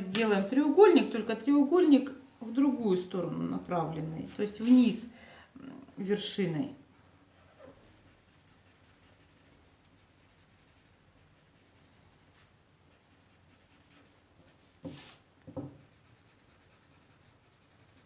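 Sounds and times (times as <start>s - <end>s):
loud scrapes or rustles: 4.4s - 5.0s
pen scratching on paper: 8.1s - 14.2s, 15.8s - 18.0s.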